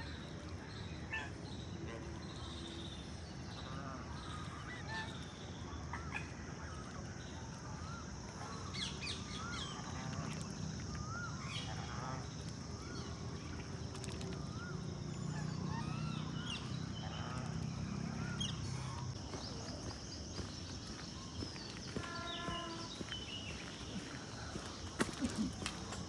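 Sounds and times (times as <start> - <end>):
birds chirping and whistling: 19.2 - 26.0.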